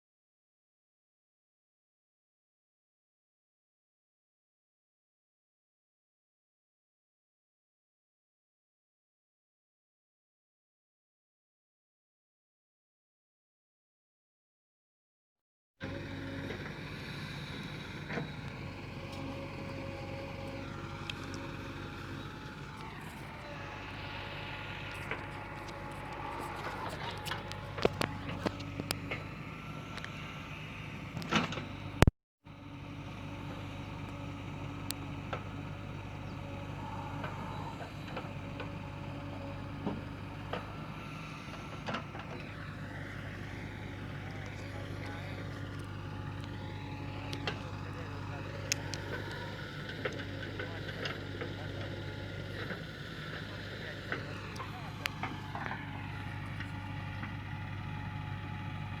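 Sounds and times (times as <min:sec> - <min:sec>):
diesel engine running: 0:15.8 - 0:59.0
rising and falling whine: 0:15.9 - 0:32.0, 0:36.2 - 0:51.2.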